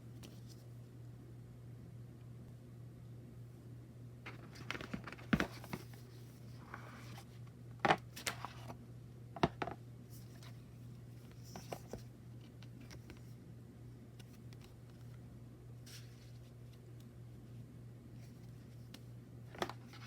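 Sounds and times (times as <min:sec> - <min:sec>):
faint low hum: 0:00.0 - 0:20.0
cards rustling and sliding: 0:04.3 - 0:08.8, 0:10.2 - 0:13.3, 0:15.9 - 0:17.1, 0:18.2 - 0:20.0.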